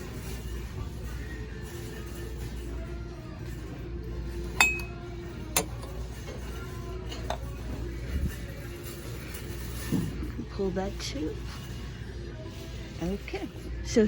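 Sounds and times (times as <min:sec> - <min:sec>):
dishware clinking: 0:04.5 - 0:06.0.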